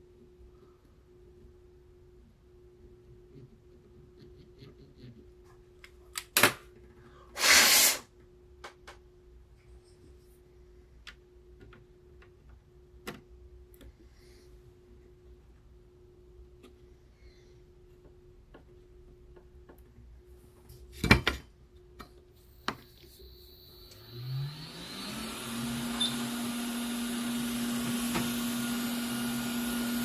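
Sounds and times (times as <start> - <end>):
short loud hiss: 7.4 - 8.1.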